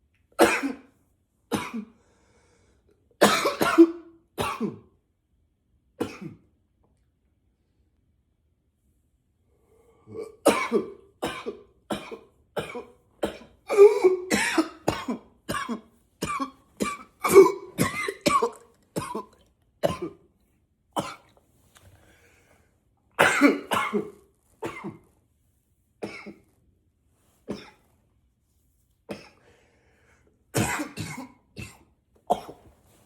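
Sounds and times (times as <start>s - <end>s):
man coughing: 1.5s - 2.0s, 3.2s - 4.8s, 6.0s - 6.4s, 10.1s - 20.2s, 23.2s - 25.0s, 26.0s - 26.4s, 30.6s - 32.7s.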